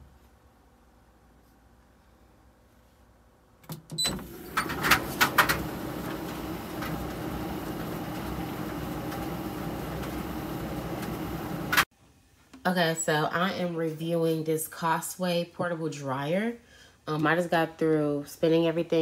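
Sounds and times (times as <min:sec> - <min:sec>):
tumble dryer running: 0:04.0 - 0:11.9.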